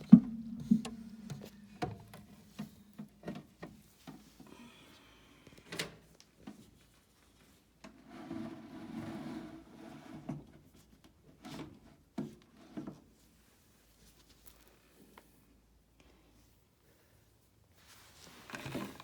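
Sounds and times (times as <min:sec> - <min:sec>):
low hum: 0:00.0 - 0:02.9
handling knocks and clicks: 0:00.0 - 0:04.2.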